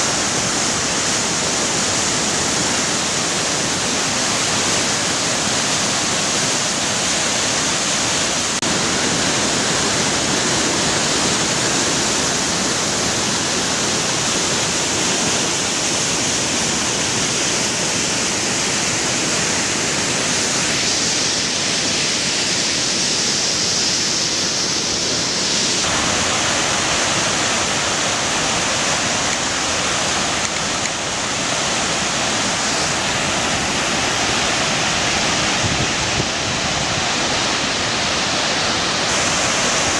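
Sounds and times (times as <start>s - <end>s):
floodwater roaring over rapids: 0.0s - 39.9s.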